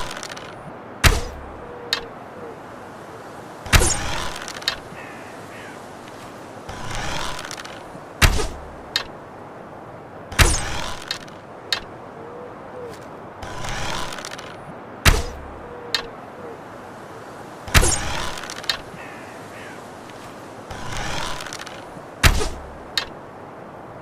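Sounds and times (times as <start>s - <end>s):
bow shot snap: 1.0s - 1.4s, 15.0s - 15.4s, 22.2s - 23.1s
soft rustling: 2.9s - 9.2s, 16.9s - 23.2s.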